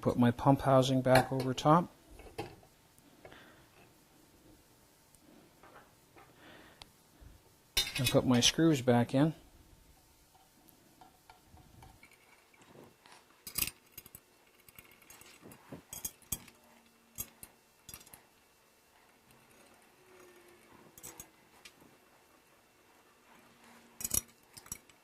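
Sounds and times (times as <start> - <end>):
screws and screwdriver clinking: 11.8 - 18.3, 19.1 - 21.3, 24.0 - 25.0.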